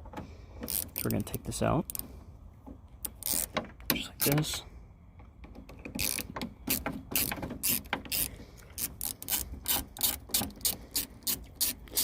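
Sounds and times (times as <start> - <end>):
ratchet clicking: 0.6 - 1.2, 3.0 - 3.5, 5.9 - 12.0.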